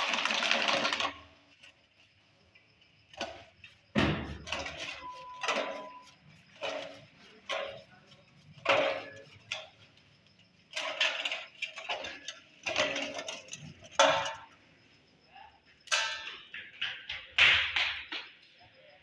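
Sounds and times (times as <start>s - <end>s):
metal parts clinking and scraping: 4.4s - 14.6s.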